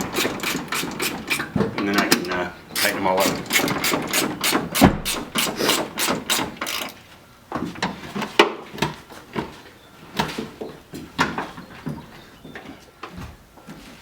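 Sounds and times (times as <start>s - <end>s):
hand ratchet rasping: 0.0s - 2.2s, 2.8s - 7.0s.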